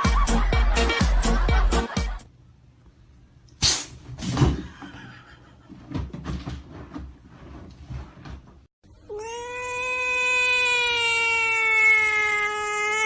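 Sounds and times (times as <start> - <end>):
bumps and knocks: 5.7 - 8.6.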